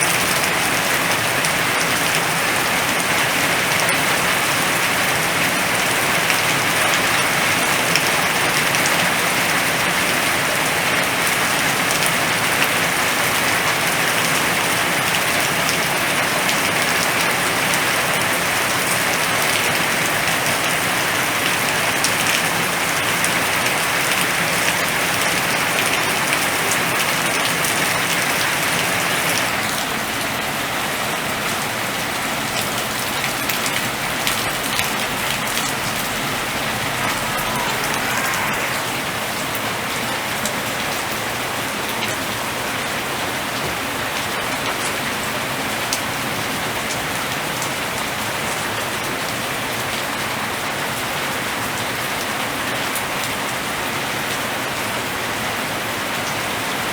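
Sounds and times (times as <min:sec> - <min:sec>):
heavy rain falling: 0:00.0 - 0:56.9.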